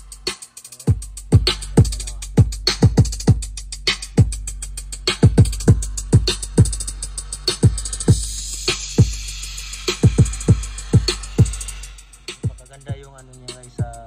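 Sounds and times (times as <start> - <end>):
ticking hi-hats: 0.0 - 14.0
deep kick drum thuds: 0.9 - 3.6, 5.1 - 6.8, 7.6 - 8.4, 10.0 - 11.6, 12.4 - 13.2.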